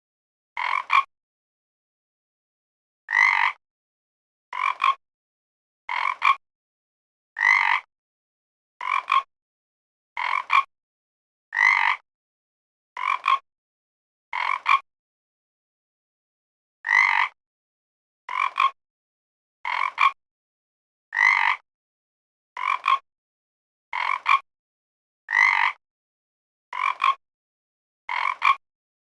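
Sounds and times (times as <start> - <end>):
frog croaking: 0.6 - 1.1, 3.1 - 3.6, 4.5 - 5.0, 5.9 - 6.4, 7.4 - 7.9, 8.8 - 9.3, 10.2 - 10.7, 11.6 - 12.0, 13.0 - 13.4, 14.3 - 14.8, 16.9 - 17.4, 18.3 - 18.8, 19.7 - 20.2, 21.2 - 21.6, 22.6 - 23.0, 23.9 - 24.4, 25.3 - 25.8, 26.7 - 27.2, 28.1 - 28.6.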